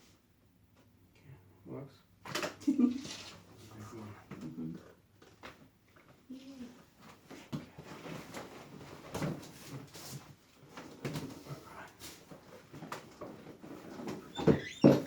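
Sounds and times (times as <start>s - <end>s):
rustling and creaking of table: 7.0s - 15.0s.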